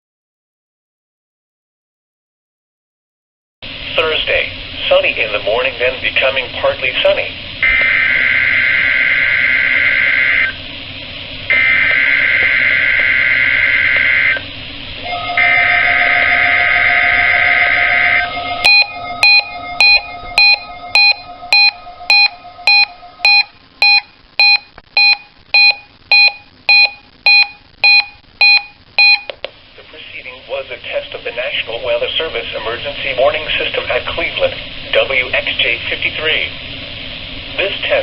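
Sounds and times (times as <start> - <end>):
steady alarm tone: 7.6 - 10.6, 11.5 - 14.4, 15.0 - 29.3
digital data bursts: 15.4 - 29.3
sharp repeating beeps: 18.6 - 29.4.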